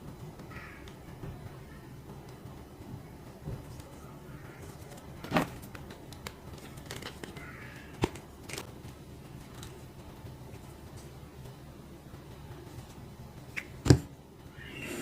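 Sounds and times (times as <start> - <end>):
packaging clicks and knocks: 4.8 - 8.7.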